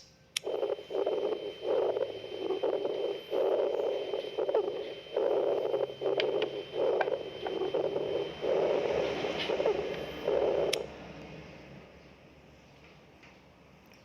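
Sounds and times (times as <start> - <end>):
faint steady high tone: 0.4 - 10.8.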